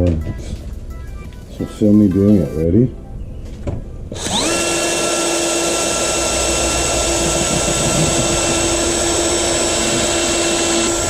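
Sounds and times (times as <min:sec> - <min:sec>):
power drill drilling into wood: 0:04.2 - 0:11.0.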